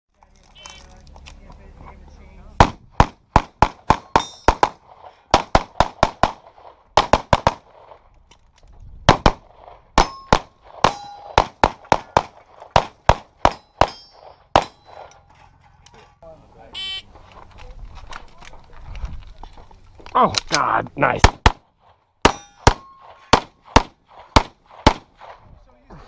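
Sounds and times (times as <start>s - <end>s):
steel targets ringing: 4.0s - 4.6s, 10.0s - 11.4s, 13.4s - 15.6s, 22.3s - 23.3s
handgun shots: 22.2s - 25.4s.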